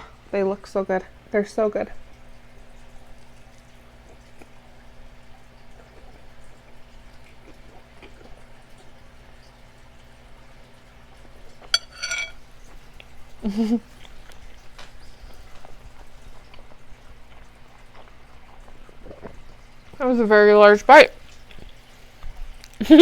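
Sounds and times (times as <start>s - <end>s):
person chewing food: 7.4s - 8.4s, 13.8s - 19.6s.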